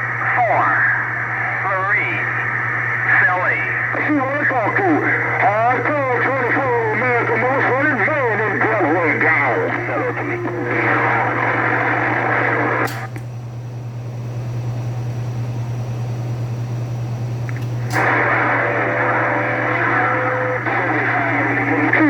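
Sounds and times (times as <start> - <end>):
faint garbled radio signal: 0.0 - 13.1, 17.9 - 22.0
radio static hiss: 0.0 - 13.1, 17.7 - 22.0
steady low hum: 0.0 - 22.0.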